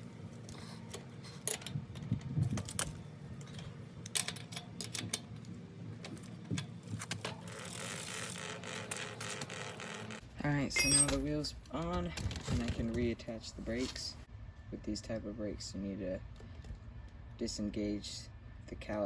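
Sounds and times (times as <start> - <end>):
metallic clicks and rattles: 0.9 - 7.6.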